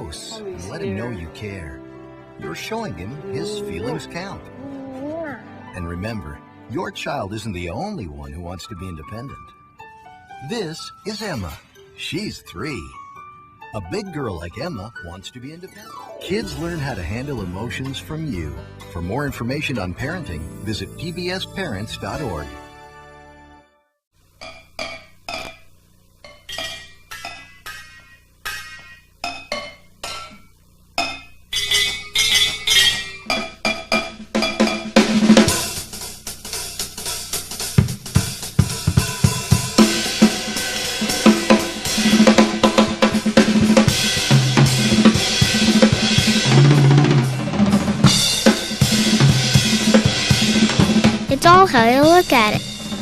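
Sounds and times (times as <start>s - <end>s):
drum-kit beat with bass: 35.0s - 46.6s.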